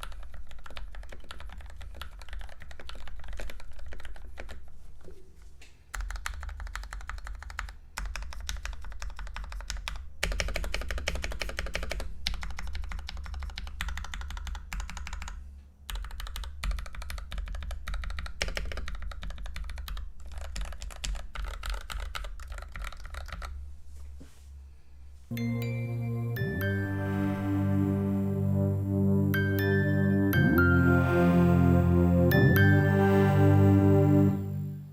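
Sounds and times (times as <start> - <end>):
fast typing on mechanical keyboard: 0.0 - 4.7, 5.9 - 23.6.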